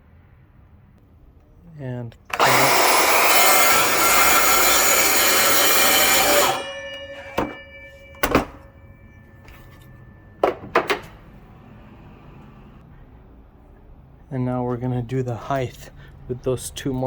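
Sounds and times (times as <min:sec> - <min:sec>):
saw cutting wood: 0:02.3 - 0:08.6
saw blade spinning down: 0:02.3 - 0:08.8
sharp knocks: 0:05.5 - 0:08.7, 0:10.4 - 0:11.2.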